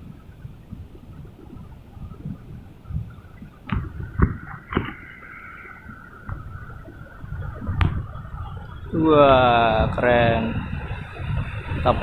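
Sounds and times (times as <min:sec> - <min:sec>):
faint steady whine: 0:00.0 - 0:12.0
heavy surf breaking: 0:03.6 - 0:12.0.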